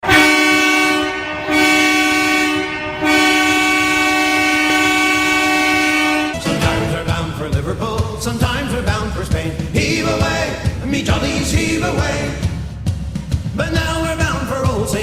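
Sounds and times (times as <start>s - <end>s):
hockey goal horn blasts: 0.0s - 7.0s
music: 6.3s - 15.0s.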